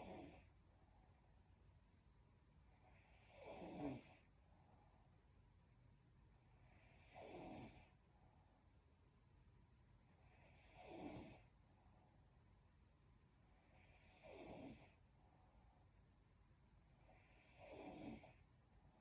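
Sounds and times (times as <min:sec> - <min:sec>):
woman snoring quietly: 0:00.0 - 0:00.5, 0:02.7 - 0:04.3, 0:06.6 - 0:08.0, 0:10.2 - 0:11.5, 0:13.6 - 0:15.0, 0:17.0 - 0:18.5.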